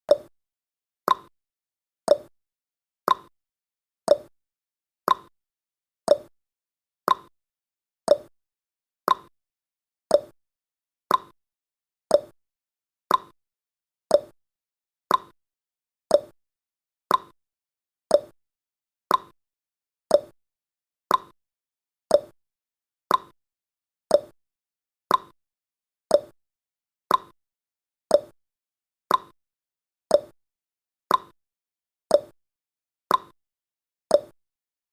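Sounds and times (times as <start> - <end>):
clock ticking: 0.1 - 0.3, 1.1 - 1.3, 2.1 - 2.3, 3.1 - 3.3, 4.1 - 4.3, 5.1 - 5.3, 6.1 - 6.3, 7.1 - 7.3, 8.1 - 8.3, 9.1 - 9.3, 10.1 - 10.3, 11.1 - 11.3, 12.1 - 12.3, 13.1 - 13.3, 14.1 - 14.3, 15.1 - 15.3, 16.1 - 16.3, 17.1 - 17.3, 18.1 - 18.3, 19.1 - 19.3, 20.1 - 20.3, 21.1 - 21.3, 22.1 - 22.3, 23.1 - 23.3, 24.1 - 24.3, 25.1 - 25.4, 26.1 - 26.3, 27.1 - 27.3, 28.1 - 28.3, 29.1 - 29.4, 30.1 - 30.3, 31.1 - 31.4, 32.1 - 32.4, 33.1 - 33.4, 34.1 - 34.4.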